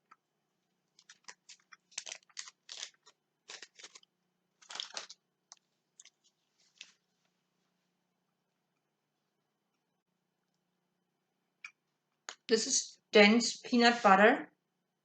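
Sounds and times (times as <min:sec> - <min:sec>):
wrapper crinkling and tearing: 0:00.9 - 0:07.0.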